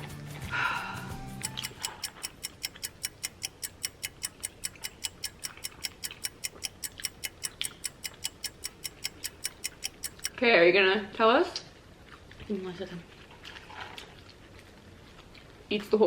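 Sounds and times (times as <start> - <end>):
background music: 0.0 - 1.8
fast clock ticking: 1.1 - 10.4.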